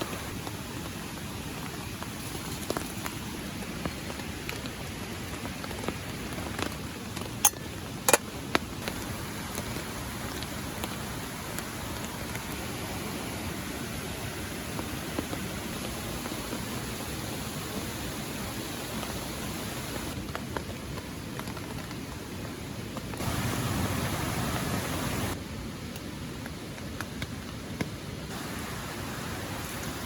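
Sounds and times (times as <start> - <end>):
river and waterfall rushing: 0.0 - 2.1, 3.2 - 20.2, 23.2 - 25.4, 28.2 - 30.0
rain falling: 0.0 - 30.0.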